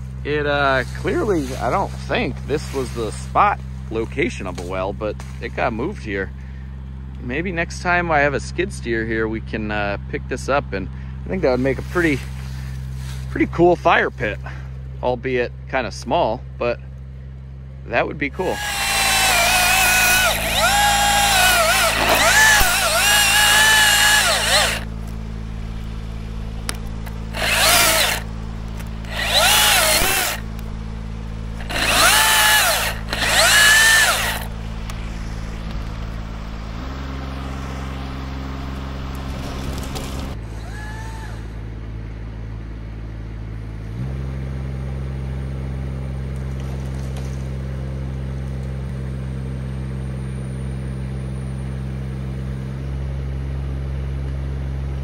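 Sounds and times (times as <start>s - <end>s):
engine hum: 0.0s - 55.0s
chainsaw revving: 18.4s - 26.0s, 26.6s - 36.1s, 36.7s - 41.6s.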